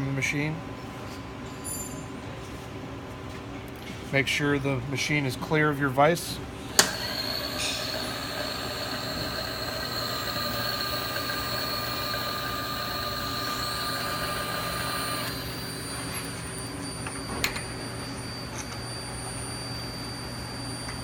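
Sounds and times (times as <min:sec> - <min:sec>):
machinery humming and whining: 0:06.3 - 0:21.0
high-pitched machine whine: 0:06.6 - 0:21.0.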